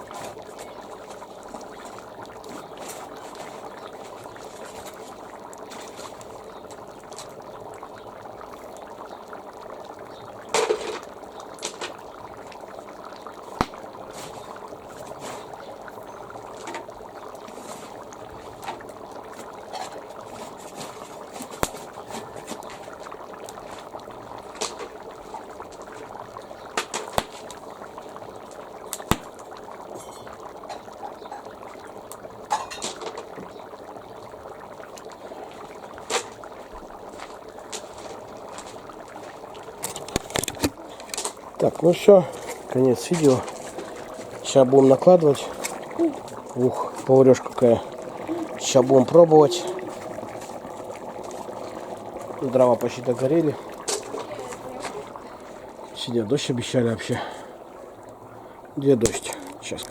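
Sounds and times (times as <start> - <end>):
stew simmering hiss: 0.0 - 59.9
sharp pops and clicks: 10.4 - 14.6, 19.7 - 23.7, 26.6 - 33.5, 37.2 - 56.0, 59.0 - 59.9.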